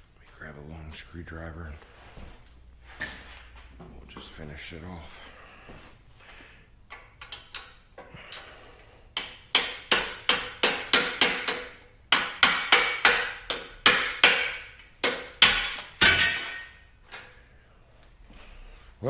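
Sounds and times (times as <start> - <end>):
hammer striking metal: 9.2 - 16.8.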